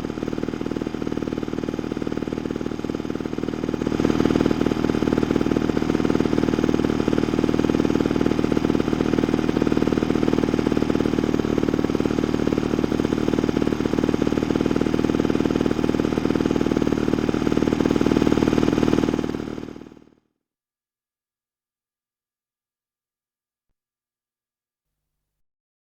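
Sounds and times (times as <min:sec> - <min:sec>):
lawnmower engine running: 0:00.0 - 0:20.1.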